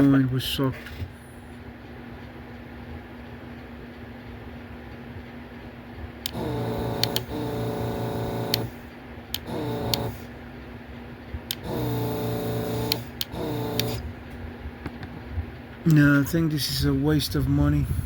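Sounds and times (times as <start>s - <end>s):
vacuum pump buzzing: 5.9s - 16.4s
switch click: 6.2s - 7.4s.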